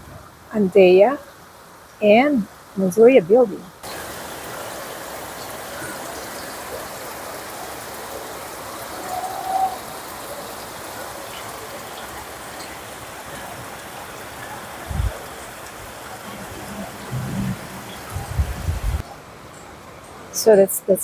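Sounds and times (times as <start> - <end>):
water hissing: 3.8 - 19.0.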